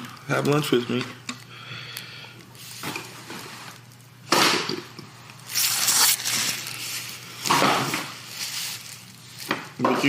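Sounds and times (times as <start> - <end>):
food packaging rustling: 5.2 - 9.9.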